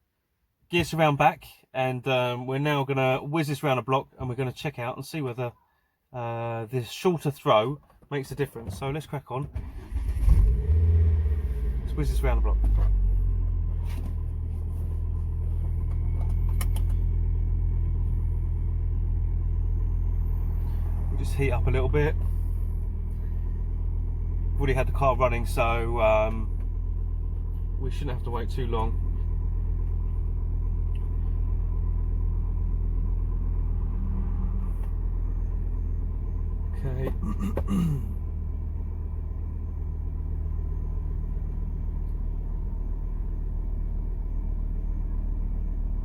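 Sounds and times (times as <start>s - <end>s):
car engine idling: 9.6s - 46.0s.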